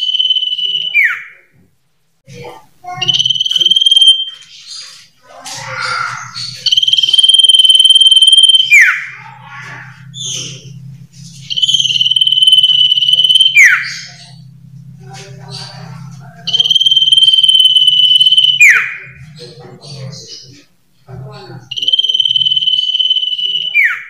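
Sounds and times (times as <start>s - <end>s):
bird whistling and chirping: 6.1s - 9.2s, 11.4s - 14.4s, 16.4s - 19.0s.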